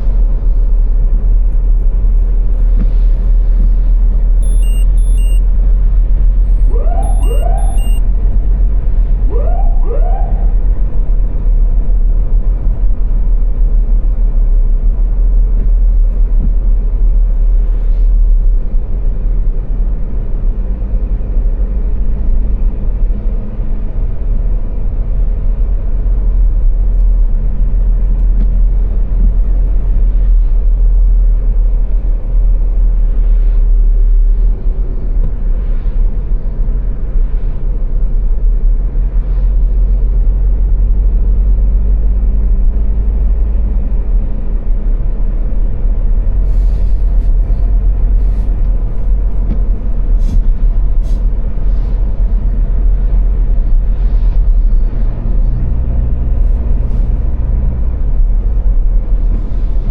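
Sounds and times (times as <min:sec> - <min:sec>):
car driving road rumble: 0:00.0 - 0:59.9
short rising tones: 0:04.4 - 0:05.4, 0:06.6 - 0:08.1.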